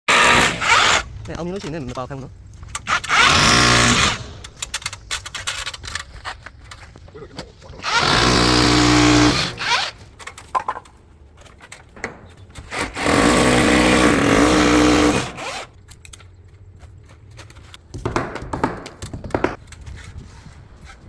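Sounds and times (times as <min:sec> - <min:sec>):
power drill motor running: 0:00.1 - 0:01.1, 0:02.9 - 0:04.4, 0:07.8 - 0:10.0, 0:12.7 - 0:15.7
knocks: 0:11.9 - 0:13.2, 0:17.9 - 0:19.6.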